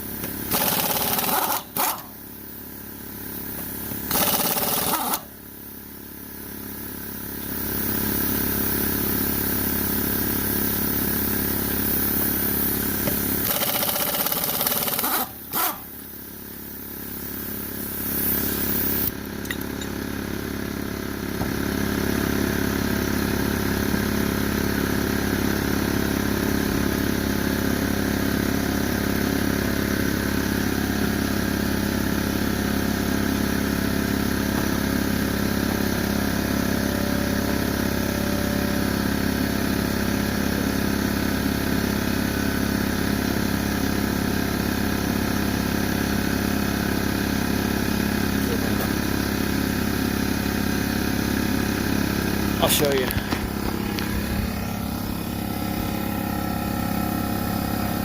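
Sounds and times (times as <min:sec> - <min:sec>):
machine motor humming: 0:34.0 - 0:41.2, 0:51.4 - 0:58.0.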